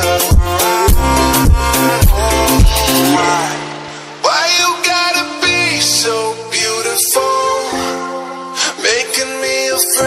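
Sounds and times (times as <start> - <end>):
heavy bass drum beat: 0.0 - 3.5
synth melody: 0.0 - 5.6
electronic dance music: 0.0 - 8.4.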